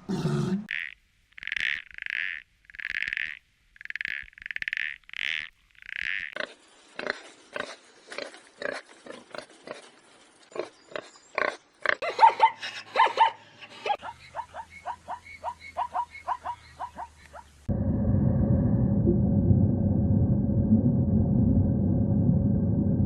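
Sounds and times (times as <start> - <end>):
animal grunts and clicks: 1.4 - 12.9.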